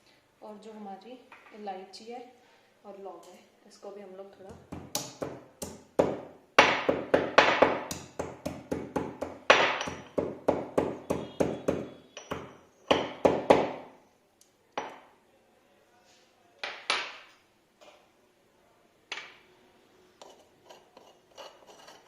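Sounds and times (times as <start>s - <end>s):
pestle crushing spices: 4.5s - 13.8s.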